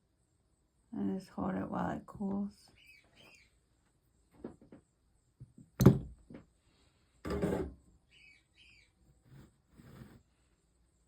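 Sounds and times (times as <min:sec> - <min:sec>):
small bird chirping: 0:02.7 - 0:04.3, 0:08.0 - 0:09.0.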